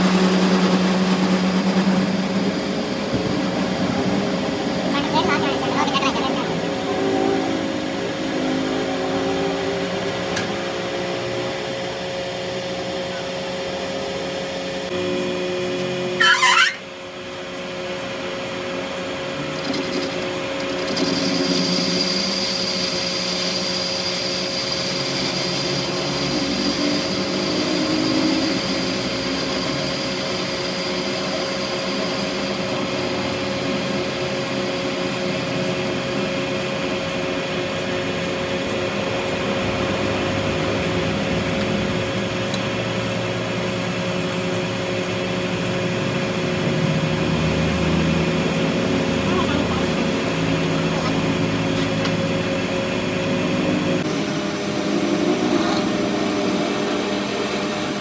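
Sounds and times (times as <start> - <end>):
machine motor humming: 0.0 - 12.4
steady high whine: 0.0 - 58.0
high-pitched screech: 16.1 - 16.9.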